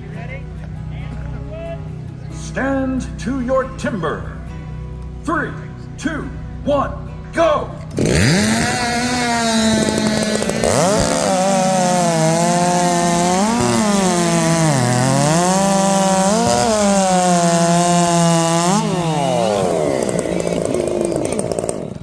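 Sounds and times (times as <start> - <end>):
chainsaws cutting timber: 7.8 - 22.0.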